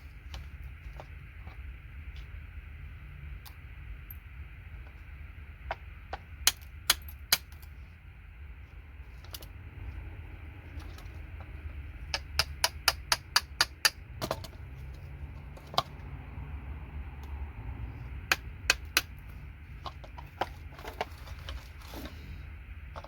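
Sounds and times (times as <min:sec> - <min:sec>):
steady low hum: 0:00.0 - 0:23.0
chisel clicking on circuit board: 0:12.1 - 0:14.0.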